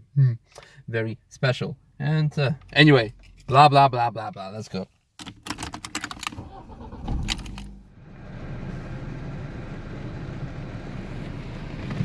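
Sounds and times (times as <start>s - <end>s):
sharp clicks and rattles: 5.2s - 7.7s
car engine running: 6.5s - 12.0s.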